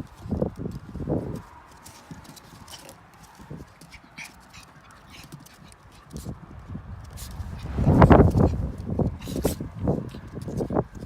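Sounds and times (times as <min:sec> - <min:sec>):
paw steps and clicks: 0:00.0 - 0:07.4
dogs scuffling: 0:00.1 - 0:11.0.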